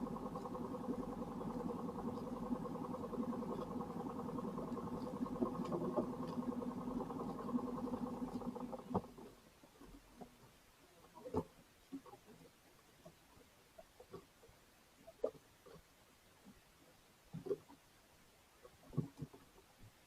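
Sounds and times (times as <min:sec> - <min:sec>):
engine running with flutter: 0:00.0 - 0:09.9.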